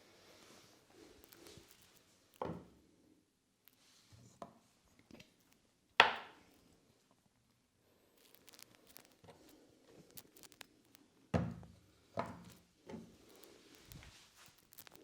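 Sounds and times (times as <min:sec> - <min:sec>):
hands rustling on cloth: 0:13.2 - 0:15.0.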